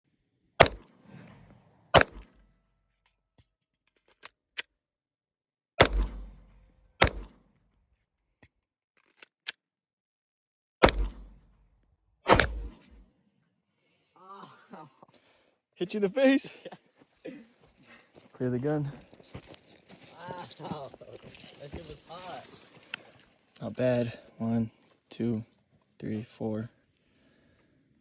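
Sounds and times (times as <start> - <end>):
pistol shots: 0.6 - 2.4, 5.8 - 7.4, 10.8 - 11.4, 12.3 - 13.0.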